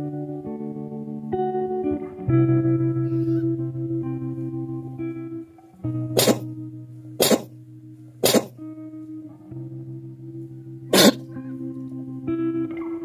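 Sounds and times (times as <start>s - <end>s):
music with sustained notes: 0.0s - 13.0s
sharp noise bursts: 6.2s - 6.5s, 7.2s - 7.5s, 8.2s - 8.6s.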